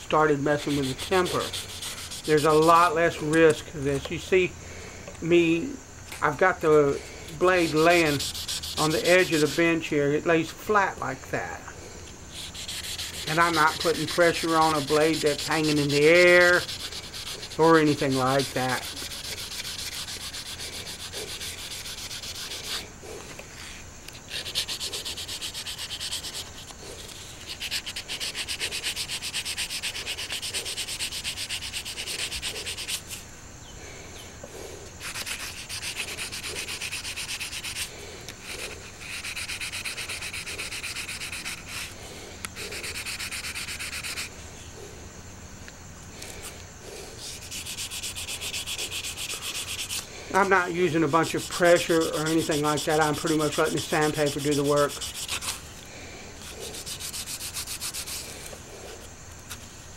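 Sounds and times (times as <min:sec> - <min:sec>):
sandpaper scratching steel blade: 0:00.4 - 0:03.4, 0:06.6 - 0:09.9, 0:12.3 - 0:22.8, 0:23.6 - 0:33.2, 0:35.0 - 0:42.0, 0:42.6 - 0:44.3, 0:47.2 - 0:55.6, 0:56.4 - 0:58.5.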